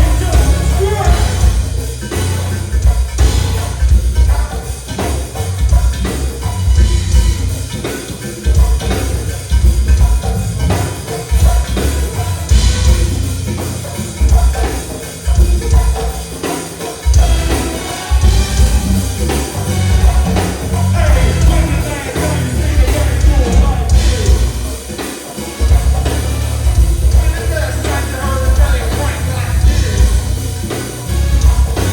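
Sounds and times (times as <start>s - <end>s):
dance music with bass beat: 0.0s - 1.8s, 17.4s - 24.8s
person singing: 17.2s - 26.0s.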